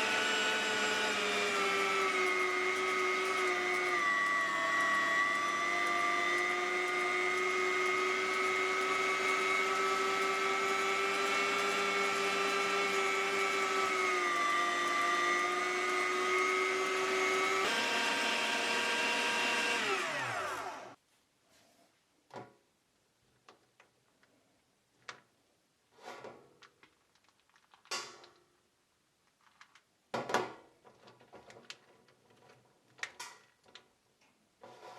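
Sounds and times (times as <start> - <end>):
meat grinder motor whining: 0.0 - 21.0.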